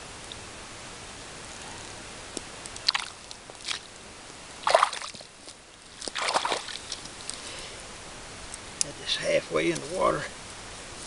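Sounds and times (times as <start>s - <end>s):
shallow water splashing: 2.8s - 3.9s, 4.6s - 7.1s.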